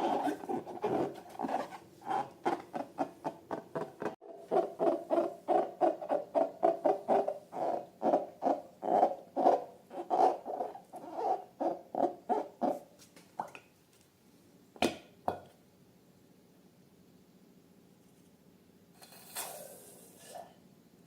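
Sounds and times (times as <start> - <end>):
rubber balloon squeaking: 0.0 - 7.8.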